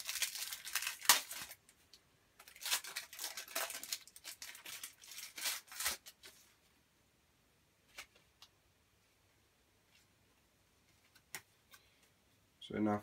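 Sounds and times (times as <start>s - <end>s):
foil wrapper tearing and crinkling: 0.0s - 1.6s, 2.4s - 6.3s.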